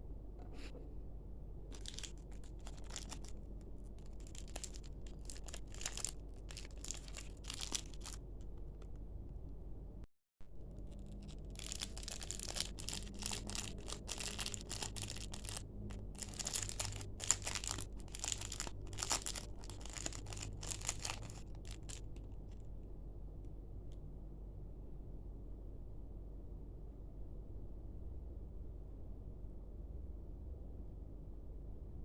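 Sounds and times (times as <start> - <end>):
plastic packaging crinkling: 1.7 - 8.9, 10.6 - 22.6.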